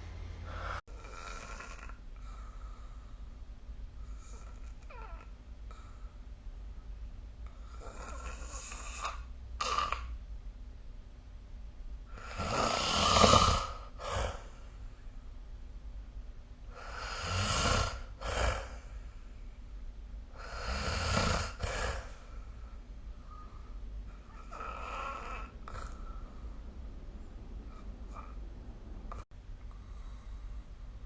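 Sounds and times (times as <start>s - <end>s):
person snoring: 0.4s - 2.9s, 12.1s - 14.6s, 16.7s - 19.0s, 20.4s - 22.3s, 24.3s - 26.2s.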